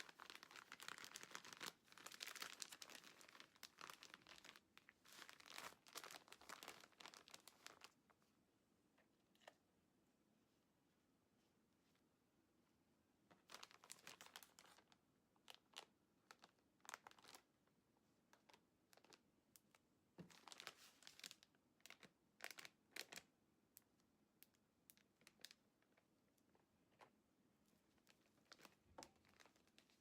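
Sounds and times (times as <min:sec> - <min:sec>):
plastic bags crinkling: 0:00.0 - 0:08.0, 0:13.3 - 0:17.6, 0:18.3 - 0:19.2, 0:20.2 - 0:23.2, 0:28.0 - 0:30.0.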